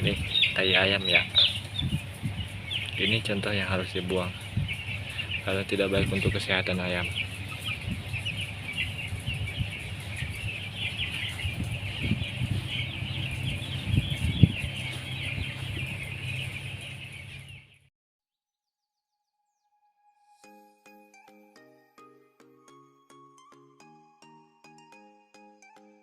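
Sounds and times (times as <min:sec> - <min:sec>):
chicks peeping: 0:00.0 - 0:17.9.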